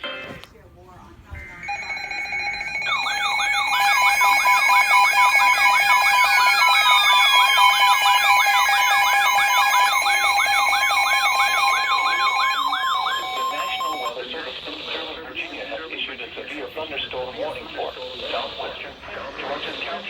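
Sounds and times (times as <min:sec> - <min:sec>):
two-tone attention signal: 0:01.4 - 0:15.9
warbling siren: 0:01.6 - 0:14.2.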